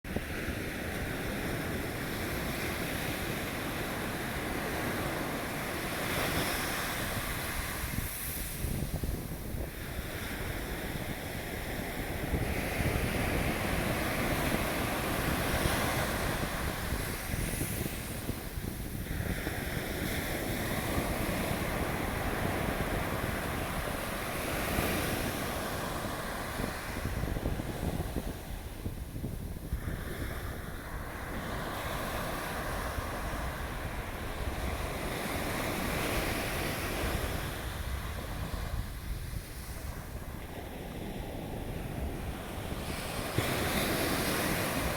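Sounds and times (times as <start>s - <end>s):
wind rumbling on microphone: 0.1s - 44.9s
ocean surf breaking: 29.8s - 44.9s.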